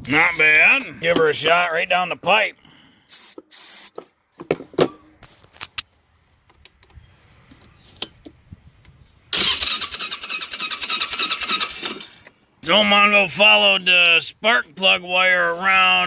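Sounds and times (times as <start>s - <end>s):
engine cranking without firing: 9.3s - 12.4s.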